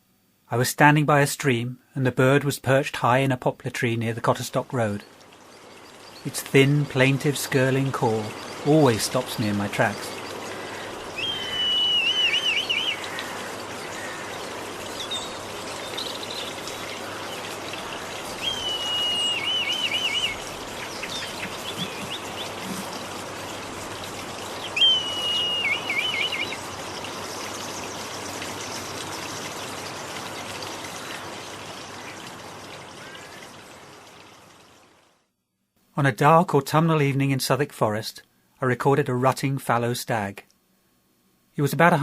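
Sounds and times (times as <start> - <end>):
stream trickling: 2.7 - 35.3
bird whistling trilling call: 11.2 - 13.2, 18.4 - 22.8, 24.6 - 26.7.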